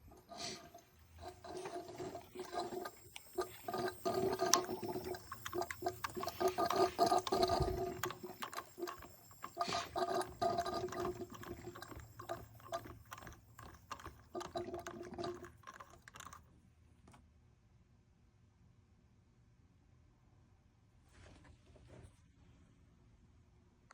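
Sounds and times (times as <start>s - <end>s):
coolant gurgling and bubbling: 0.0s - 16.5s.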